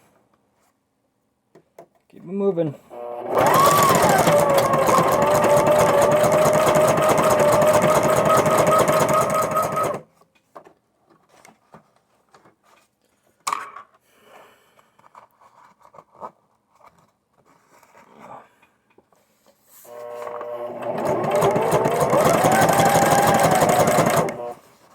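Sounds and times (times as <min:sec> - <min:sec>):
sewing machine stitching: 0:03.0 - 0:10.0, 0:19.9 - 0:24.7.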